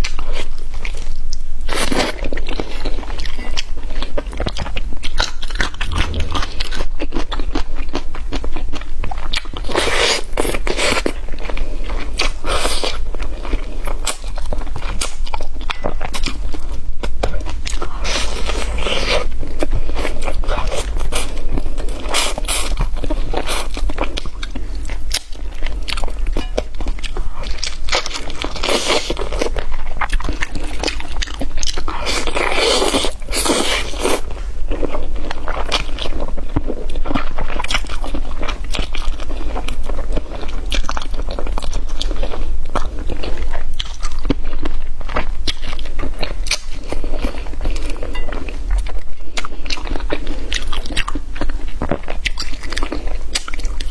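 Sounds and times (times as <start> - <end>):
person chewing crunchy food: 0.0 - 53.9
steady low hum: 0.0 - 53.9.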